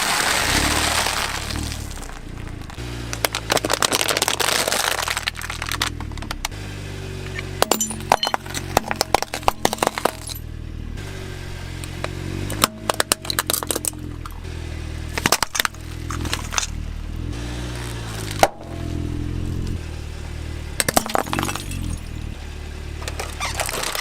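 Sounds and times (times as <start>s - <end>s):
toy cars clattering: 0.0s - 6.4s, 7.3s - 10.4s, 12.5s - 14.4s, 15.2s - 16.8s, 20.8s - 22.2s, 23.0s - 24.0s
steady low tones: 16.5s - 23.1s.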